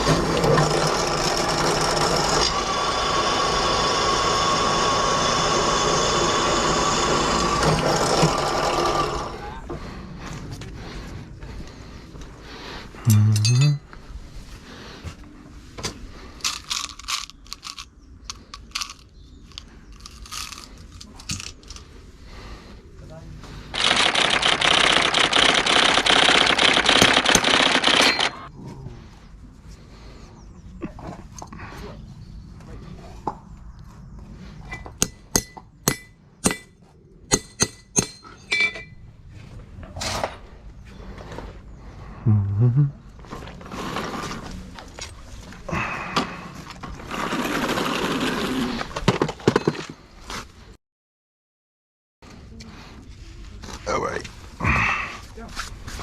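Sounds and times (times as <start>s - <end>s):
metal tools clicking and scraping: 13.1s - 13.9s, 16.4s - 21.9s, 34.7s - 39.0s
hammer striking steel: 35.0s - 38.9s.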